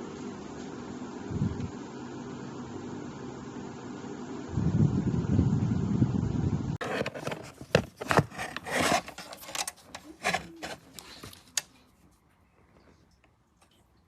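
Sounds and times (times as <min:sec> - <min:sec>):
fan air noise: 0:00.0 - 0:14.0
rubbing and scraping handling noises: 0:06.8 - 0:13.1.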